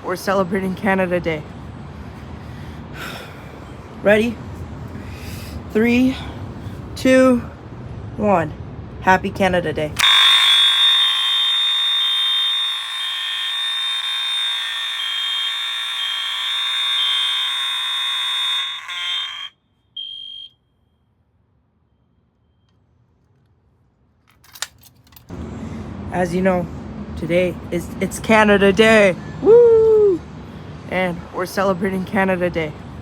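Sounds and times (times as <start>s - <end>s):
pulsing alarm beep: 10.0s - 20.6s
fire alarm buzzing tone: 10.0s - 20.9s.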